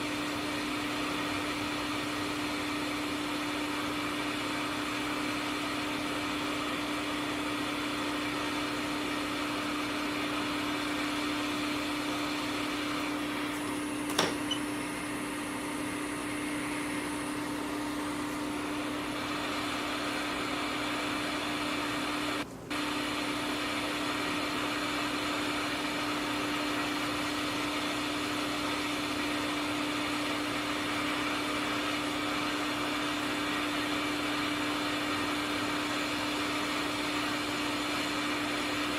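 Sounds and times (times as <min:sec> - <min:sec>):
sharp click: 0:14.1 - 0:14.6.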